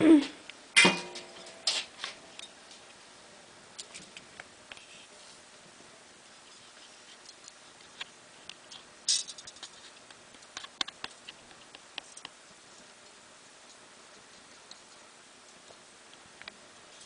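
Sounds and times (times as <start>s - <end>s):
crackle: 3.7s - 17.0s
wire clicking while soldering: 7.2s - 16.6s.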